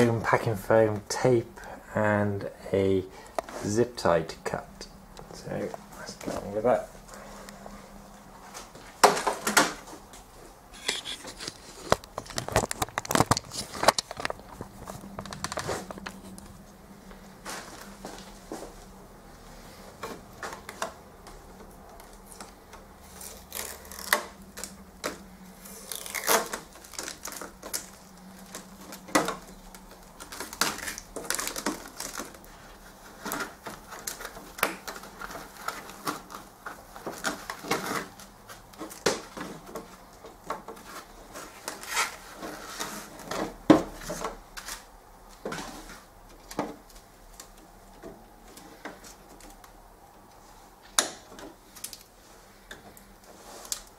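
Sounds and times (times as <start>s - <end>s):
packing material crinkling: 10.8s - 16.7s, 20.0s - 44.9s
packing tape peeling and tearing: 22.0s - 39.8s, 40.7s - 44.9s.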